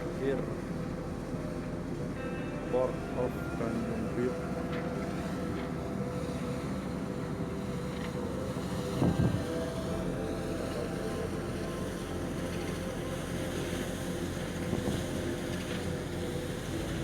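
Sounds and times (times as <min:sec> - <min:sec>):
ship engine humming: 0:00.0 - 0:17.0
wind on microphone: 0:08.6 - 0:10.0, 0:14.6 - 0:15.2.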